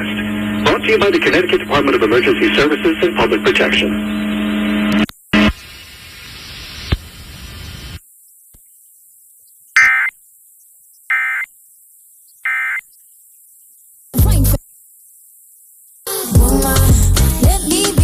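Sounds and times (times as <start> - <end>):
buzzy data tone bursts: 0.0 - 8.0, 9.8 - 10.2, 11.1 - 11.5
hiss: 5.5 - 8.0.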